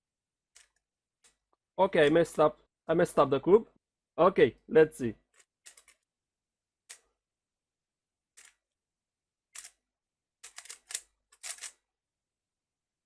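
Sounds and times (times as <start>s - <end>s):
puzzle cube plastic clicks: 10.4s - 11.8s.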